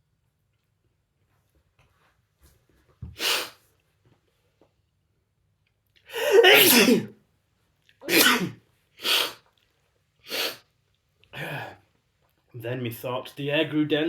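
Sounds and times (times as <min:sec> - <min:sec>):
person sneezing: 0:03.2 - 0:03.6, 0:06.1 - 0:07.1, 0:08.0 - 0:09.4, 0:10.3 - 0:10.6.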